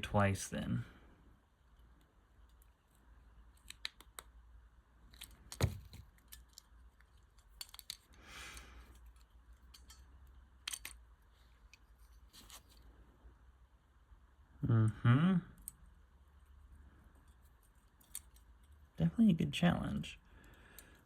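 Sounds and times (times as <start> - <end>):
small plastic parts clicking: 1.7 - 4.4, 5.0 - 12.8, 17.1 - 18.9.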